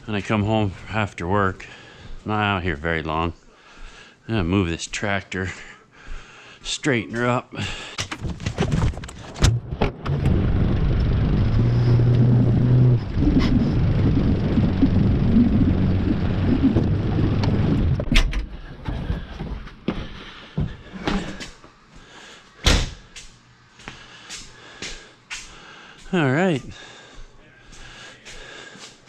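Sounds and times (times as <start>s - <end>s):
knocks and clunks: 8.0s - 10.4s
tractor engine running: 8.3s - 19.1s.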